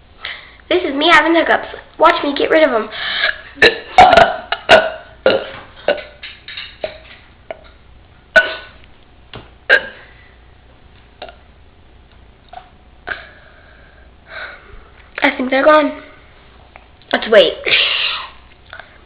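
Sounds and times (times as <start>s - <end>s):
girl burping: 3.6s - 6.1s, 8.4s - 8.7s, 9.7s - 10.0s.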